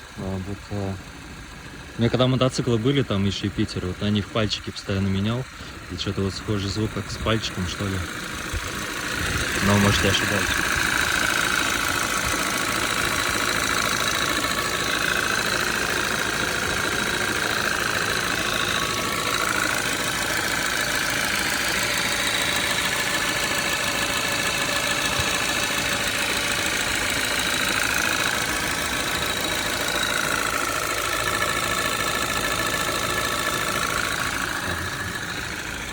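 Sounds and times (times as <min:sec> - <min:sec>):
car engine idling with knock: 0:00.0 - 0:35.9.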